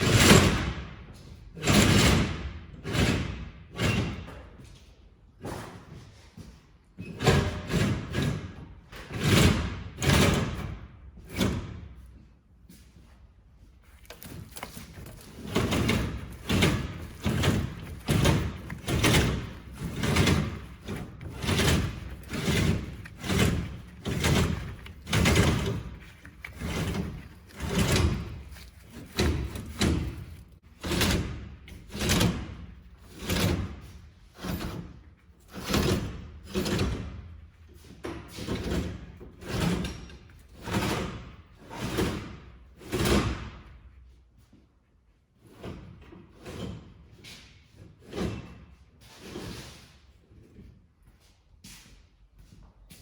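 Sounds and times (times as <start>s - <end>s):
metal scraping and sliding: 13.6s - 43.7s, 45.4s - 50.3s.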